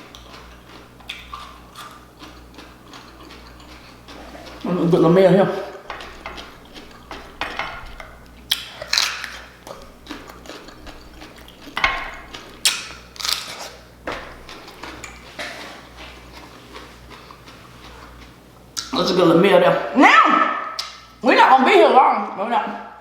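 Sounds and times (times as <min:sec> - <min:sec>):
crab shells cracking: 0:00.0 - 0:04.7, 0:05.8 - 0:15.5.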